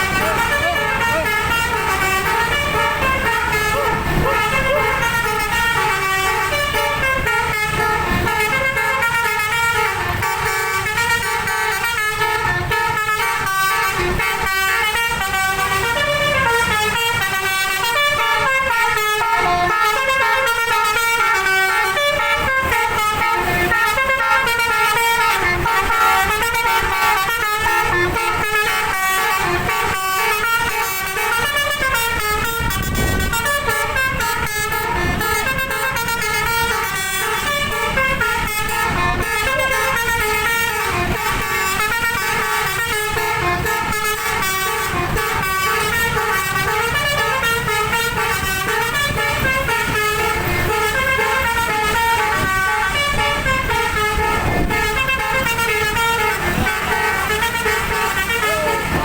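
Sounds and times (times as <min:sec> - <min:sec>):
bus air horn playing tune: 0:00.0 - 0:59.0.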